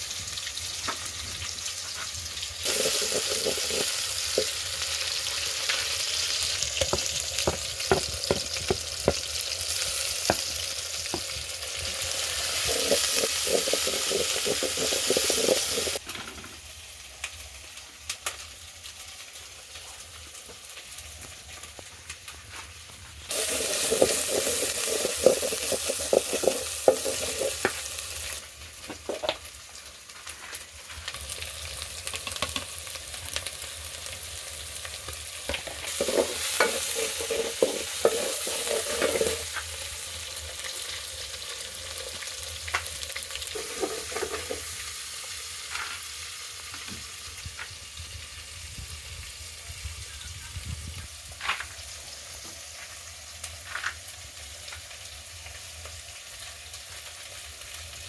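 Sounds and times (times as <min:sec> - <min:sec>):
food sizzling in a pan: 0:00.0 - 0:58.0
utensil scraping a pan: 0:01.8 - 0:04.6, 0:12.3 - 0:16.0, 0:23.3 - 0:28.3, 0:35.9 - 0:39.7, 0:43.5 - 0:44.8.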